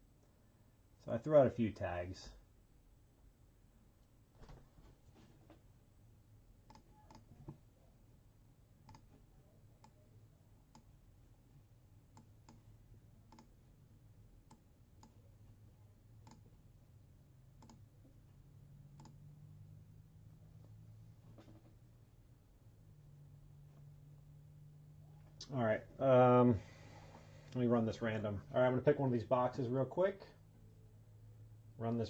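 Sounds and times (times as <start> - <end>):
computer mouse clicking: 6.7 - 7.6, 8.8 - 9.2, 12.1 - 12.6, 13.3 - 13.6, 14.4 - 15.2, 16.2 - 16.5, 17.6 - 17.8, 18.9 - 19.2.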